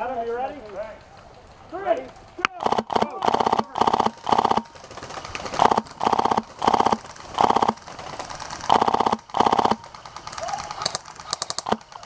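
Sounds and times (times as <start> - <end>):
airsoft rifle full-auto bursts: 2.5 - 12.0.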